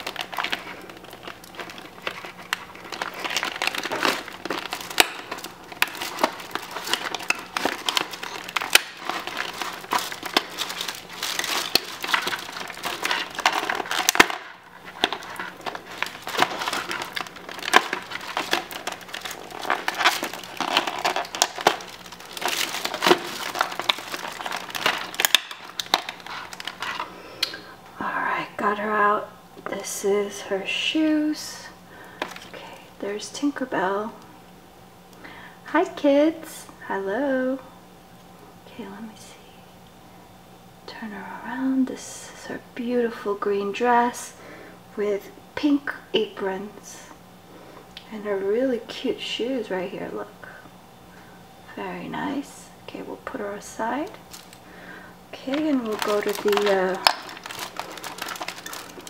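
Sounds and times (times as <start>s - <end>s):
toy packaging crinkling: 0.0s - 27.1s, 32.2s - 32.5s, 54.0s - 54.7s, 55.4s - 59.0s.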